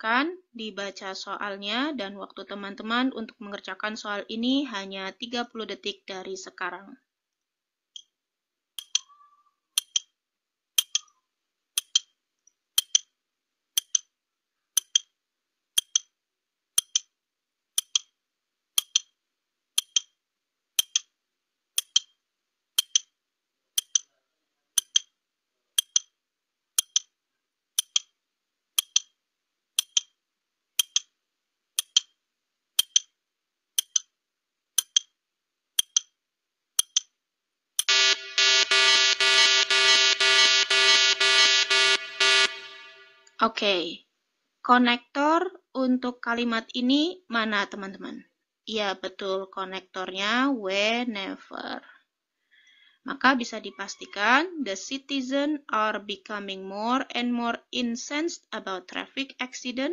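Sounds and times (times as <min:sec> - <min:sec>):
clock ticking: 0:08.8 - 0:09.2, 0:09.8 - 0:10.1, 0:10.8 - 0:11.2, 0:11.8 - 0:12.2, 0:12.8 - 0:13.1, 0:13.8 - 0:14.1, 0:14.8 - 0:15.1, 0:15.8 - 0:16.1, 0:16.8 - 0:17.2, 0:17.8 - 0:18.2, 0:18.8 - 0:19.2, 0:19.8 - 0:20.2, 0:20.8 - 0:21.2, 0:21.8 - 0:22.2, 0:22.8 - 0:23.2, 0:23.8 - 0:24.1, 0:24.8 - 0:25.2, 0:25.8 - 0:26.2, 0:26.8 - 0:27.2, 0:27.8 - 0:28.2, 0:28.8 - 0:29.2, 0:29.8 - 0:30.2, 0:30.8 - 0:31.2, 0:31.8 - 0:32.2, 0:32.8 - 0:33.2, 0:33.8 - 0:34.2, 0:34.8 - 0:35.2, 0:35.8 - 0:36.2, 0:36.8 - 0:37.2, 0:37.8 - 0:38.2.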